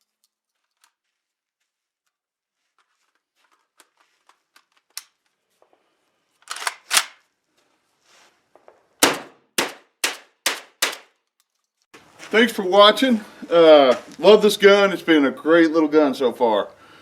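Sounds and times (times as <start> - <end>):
shotgun shots: 9.0 - 11.1.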